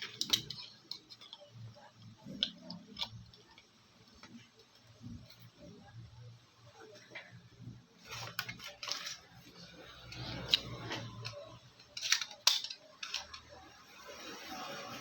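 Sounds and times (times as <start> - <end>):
plastic parts snapping: 0.0 - 4.4, 8.0 - 13.8.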